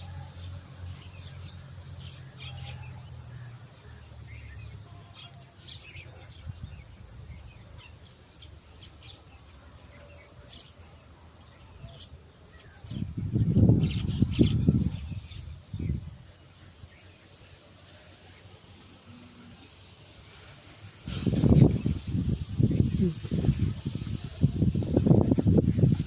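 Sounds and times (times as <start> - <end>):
birds chirping: 0.4 - 20.4.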